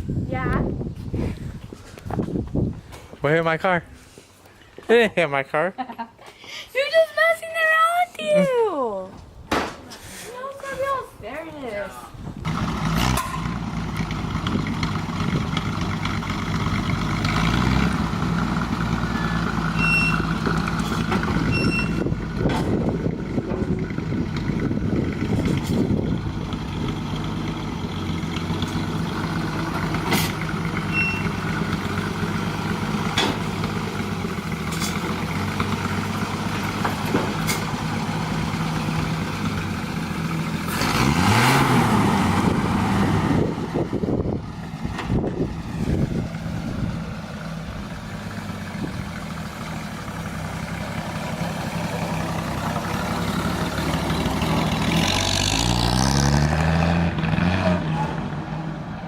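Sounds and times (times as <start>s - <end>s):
vehicle engine idling: 12.1s - 55.5s.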